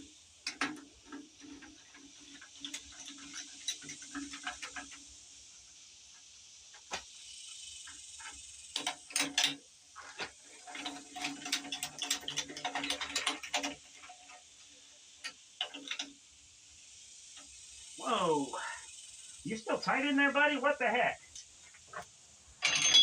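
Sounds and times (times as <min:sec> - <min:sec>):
ratchet wrench clicking: 0:00.0 - 0:05.4, 0:06.2 - 0:18.0
high insect buzz: 0:01.2 - 0:09.1, 0:16.1 - 0:22.0.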